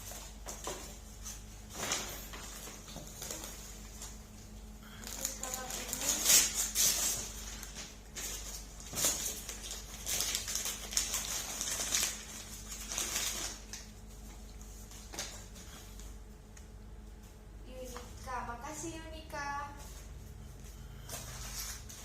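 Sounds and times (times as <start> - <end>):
gift packaging crinkling: 4.9 - 15.8.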